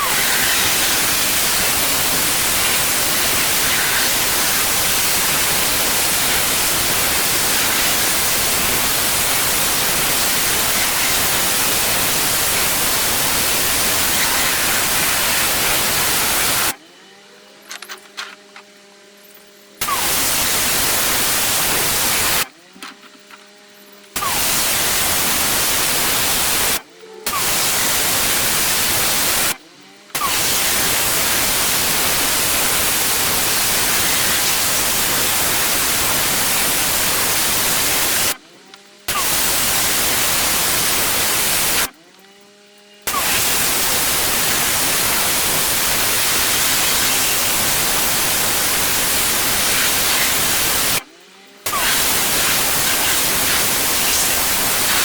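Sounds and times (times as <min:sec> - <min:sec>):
pressure washer spraying: 0:00.0 - 0:16.8, 0:19.8 - 0:22.5, 0:24.2 - 0:29.6, 0:30.2 - 0:38.4, 0:39.1 - 0:41.9, 0:43.1 - 0:51.1, 0:51.7 - 0:55.0
faint machine hum: 0:26.8 - 0:27.3.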